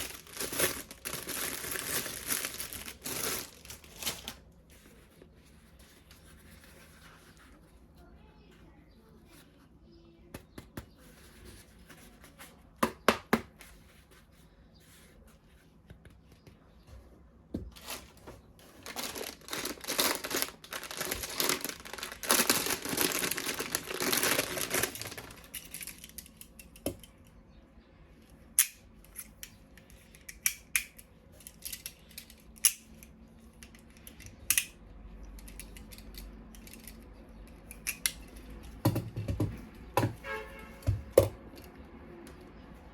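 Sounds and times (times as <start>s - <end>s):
packaging rustling and tearing: 0.0s - 4.6s, 17.7s - 26.2s.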